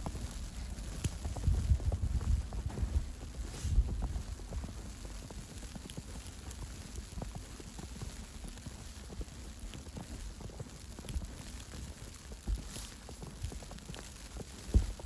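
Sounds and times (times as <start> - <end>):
footsteps crunching through snow: 12.5 - 13.6, 14.6 - 15.0.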